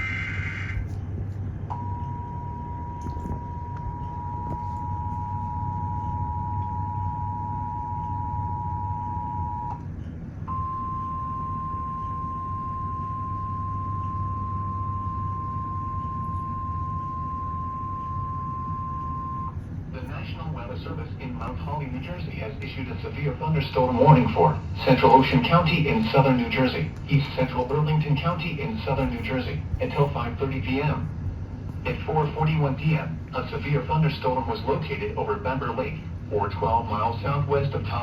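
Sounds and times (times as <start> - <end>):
steady warning alarm tone: 0.0 - 1.0, 1.7 - 19.6
steady low hum: 0.0 - 38.0
two-tone attention signal: 10.5 - 19.6.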